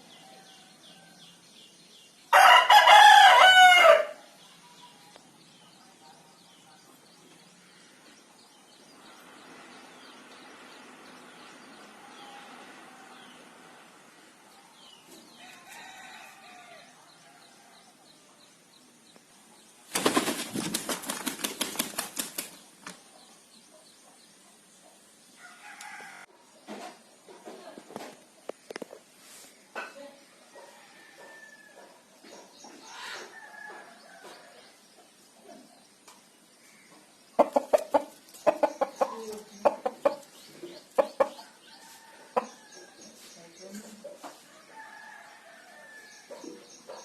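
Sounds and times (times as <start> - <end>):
rooster flapping wings: 19.9 - 23.0
chickens clucking: 37.0 - 42.6.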